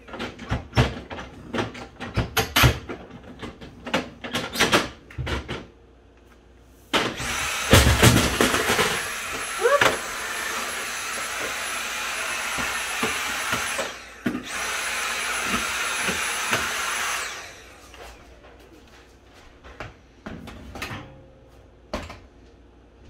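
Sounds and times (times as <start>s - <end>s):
vacuum cleaner motor whine: 7.0s - 19.4s.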